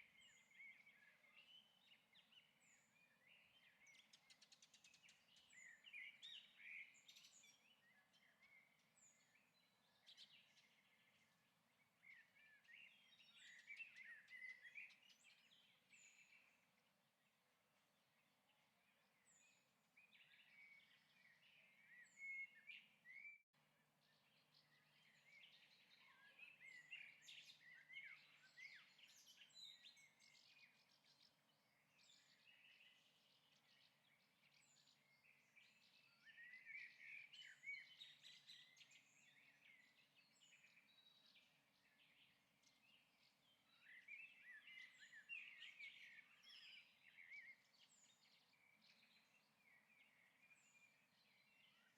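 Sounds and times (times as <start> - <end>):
faint bird chirping: 0.0 - 51.9.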